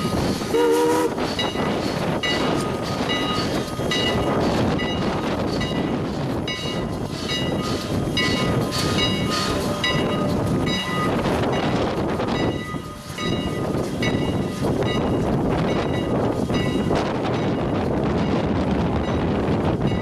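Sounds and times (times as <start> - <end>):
steam train running: 0.0 - 20.0
bell ringing: 8.2 - 11.8.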